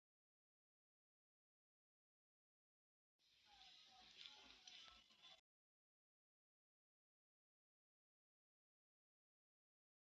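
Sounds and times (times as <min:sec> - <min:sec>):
faint music: 0:03.2 - 0:05.4.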